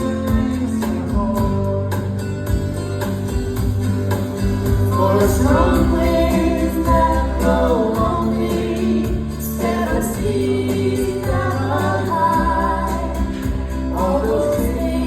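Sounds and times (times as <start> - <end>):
steady bass: 0.0 - 15.0
strummed acoustic guitar: 0.0 - 15.0
person singing: 4.8 - 15.0.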